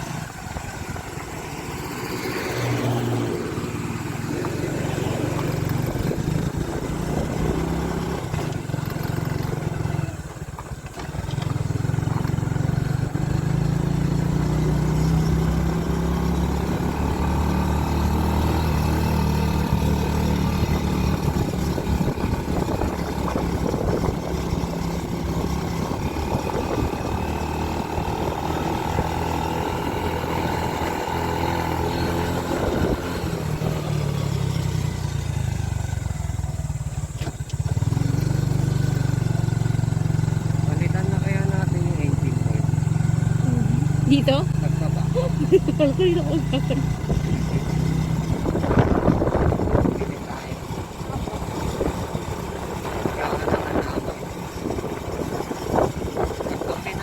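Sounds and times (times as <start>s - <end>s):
motorcycle engine running: 0.0s - 57.0s.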